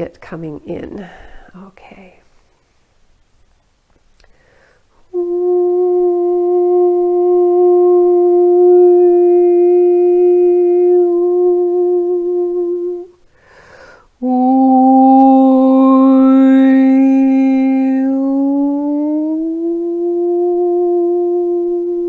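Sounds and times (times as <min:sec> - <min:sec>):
woman breathing in: 0:01.0 - 0:01.6, 0:04.2 - 0:05.0, 0:13.3 - 0:14.2
woman singing long notes: 0:05.1 - 0:13.2, 0:14.2 - 0:22.0.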